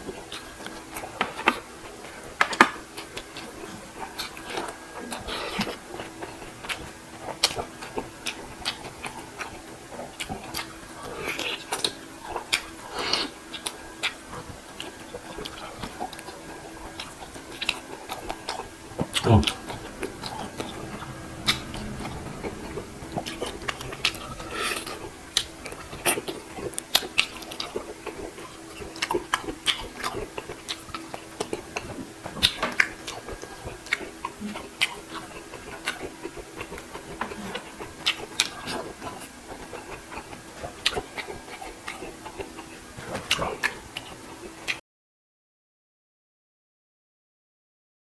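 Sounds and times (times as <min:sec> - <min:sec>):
faint steady hum: 0:00.0 - 0:44.8
chewing and mouth smacks: 0:24.9 - 0:44.8.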